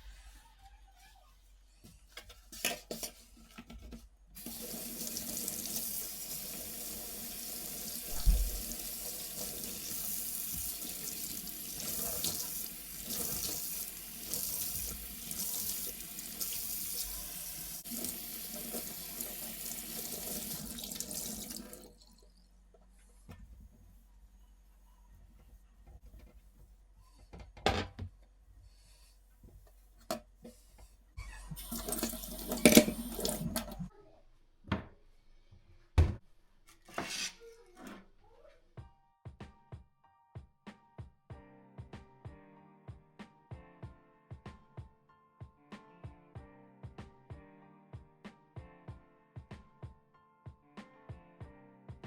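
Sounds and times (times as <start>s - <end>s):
knock: 8.1s - 8.6s
tap running into a sink: 8.1s - 21.9s, 31.6s - 33.8s.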